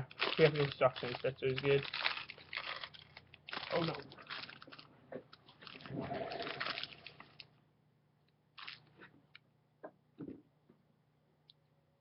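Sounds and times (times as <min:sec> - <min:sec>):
plastic packaging crinkling: 0:00.0 - 0:07.5, 0:08.6 - 0:09.0.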